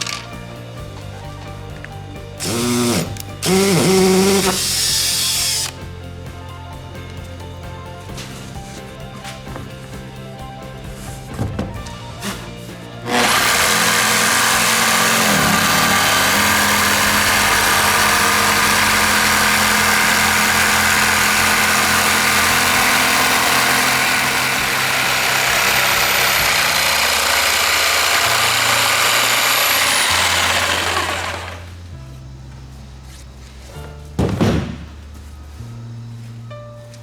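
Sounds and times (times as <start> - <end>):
electric power tool running: 2.2 - 6.0, 11.9 - 31.9.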